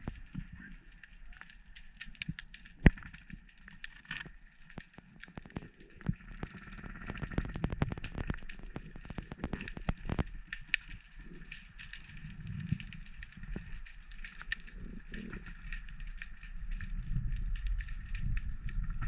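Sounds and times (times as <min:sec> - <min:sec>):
underwater crackling clicks: 0:00.0 - 0:19.0.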